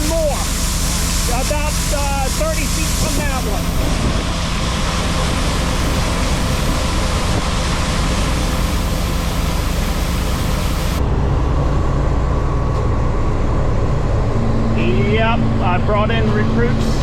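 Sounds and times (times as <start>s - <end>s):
loud hiss: 0.0s - 11.0s
farm machinery engine running: 0.0s - 17.0s
low even drone: 0.0s - 17.0s.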